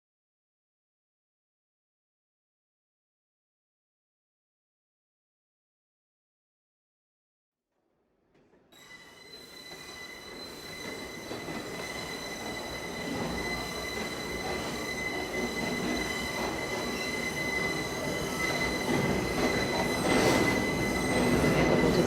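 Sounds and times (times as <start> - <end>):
subway train running: 8.7 - 22.0
high-pitched wheel squeal: 8.8 - 22.0.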